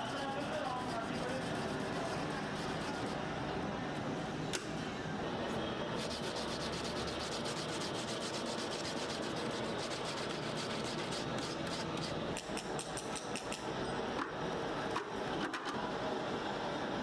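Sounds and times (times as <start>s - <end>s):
rhythmic scraping strokes: 0.0s - 3.2s, 6.0s - 12.2s.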